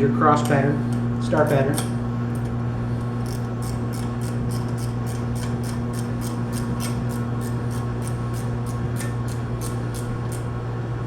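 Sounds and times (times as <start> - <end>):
low electrical hum: 0.0 - 11.0
socket ratchet clicking: 3.2 - 10.5.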